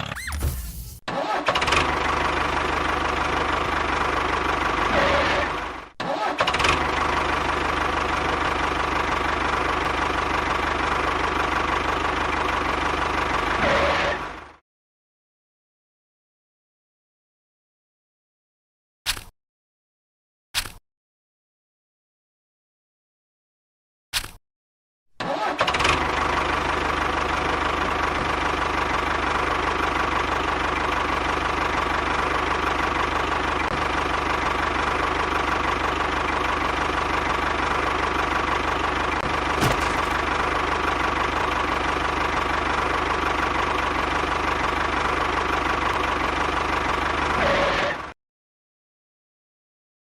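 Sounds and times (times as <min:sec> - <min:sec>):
motor running: 0:00.0 - 0:01.1, 0:39.6 - 0:40.4.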